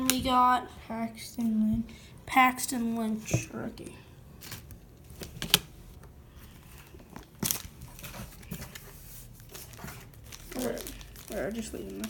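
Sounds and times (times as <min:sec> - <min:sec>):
trading cards rustling: 0:06.4 - 0:12.0.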